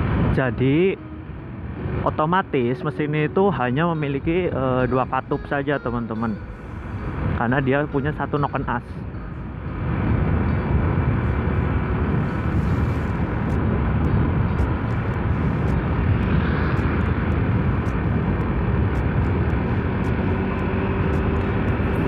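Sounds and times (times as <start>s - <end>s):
road noise: 0.0s - 22.0s
wind rushing: 9.3s - 22.0s
motorcycle engine running: 11.2s - 22.0s.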